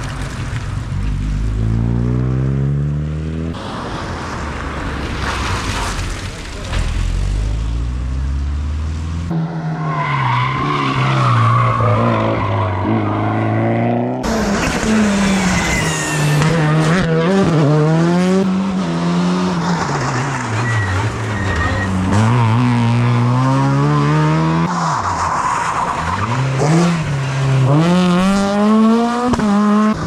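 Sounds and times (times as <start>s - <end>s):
rally car engines revving: 1.0s - 30.0s.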